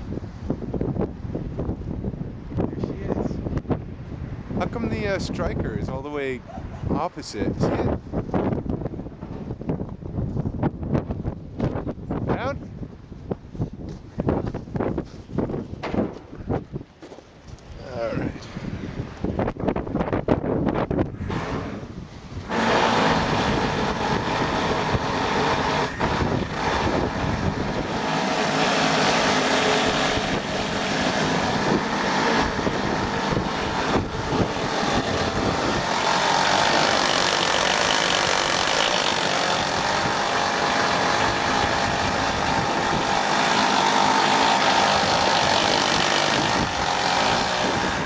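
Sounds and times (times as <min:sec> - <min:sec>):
winch running under load: 0:21.2 - 0:48.0.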